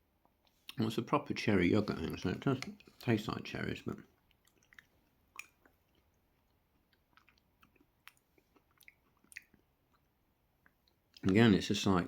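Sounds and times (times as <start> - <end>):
mouth clicks while eating: 4.3 - 6.1, 6.9 - 11.4.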